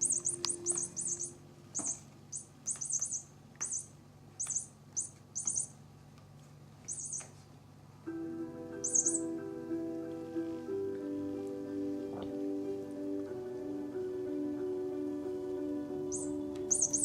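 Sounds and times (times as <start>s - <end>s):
squeaking toy mouse: 0.0s - 5.8s, 6.8s - 7.4s, 8.8s - 9.3s, 16.1s - 17.0s.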